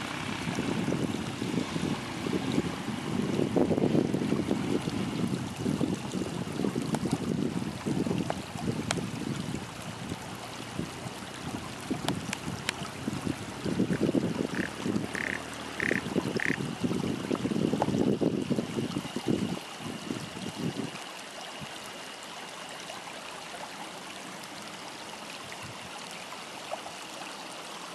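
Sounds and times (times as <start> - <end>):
frogs croaking in chorus: 13.9 - 16.6.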